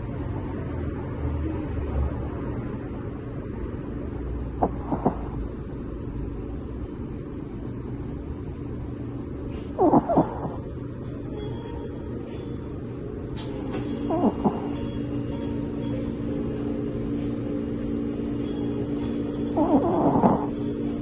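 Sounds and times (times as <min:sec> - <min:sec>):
dog snorting snores: 0:04.4 - 0:05.5, 0:09.5 - 0:10.6, 0:14.0 - 0:14.9, 0:19.5 - 0:20.6.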